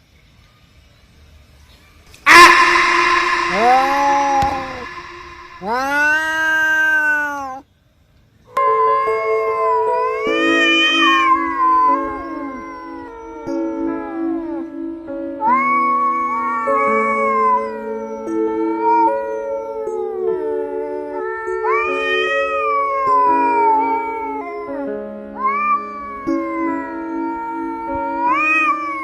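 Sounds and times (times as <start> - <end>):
cats yowling: 2.3 - 7.6, 8.7 - 29.0
background music of held notes: 8.6 - 29.0.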